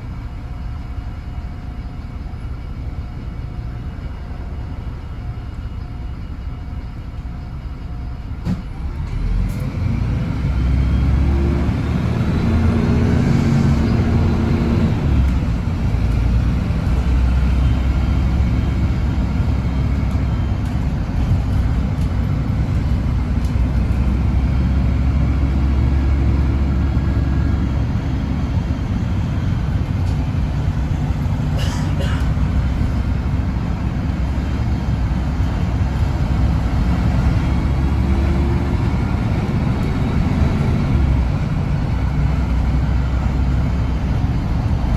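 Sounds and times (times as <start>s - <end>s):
bus diesel engine: 0.0s - 44.9s.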